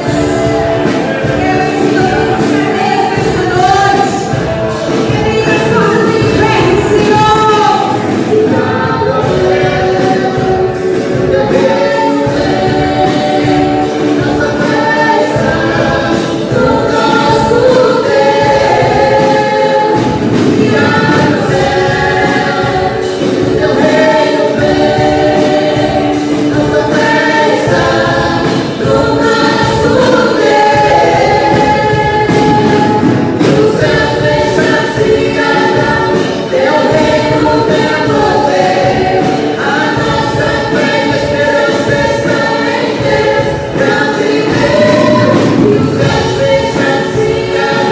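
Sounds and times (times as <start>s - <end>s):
choir singing gospel song: 0.0s - 47.9s
instrumental accompaniment: 0.0s - 47.9s.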